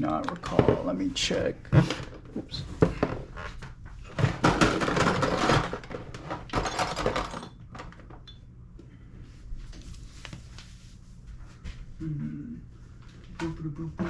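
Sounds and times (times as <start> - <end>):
small hard parts clattering: 4.1 - 8.3.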